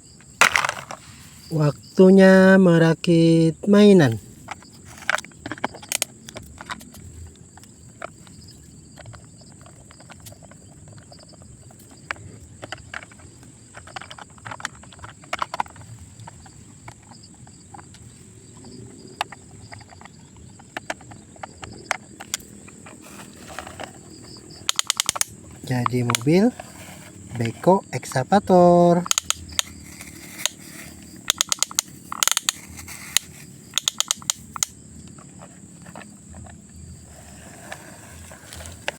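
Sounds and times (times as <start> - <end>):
plastic toy parts clicking: 0.4 - 1.0, 4.0 - 7.0, 11.8 - 17.1, 24.6 - 34.8.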